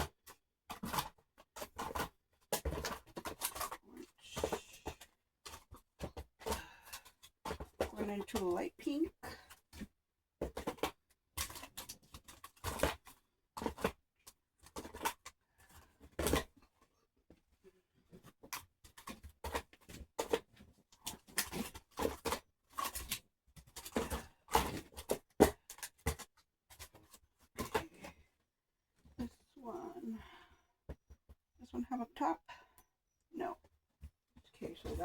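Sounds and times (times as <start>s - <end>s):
plastic packs clicking and scraping: 0.0s - 17.0s, 18.0s - 28.2s.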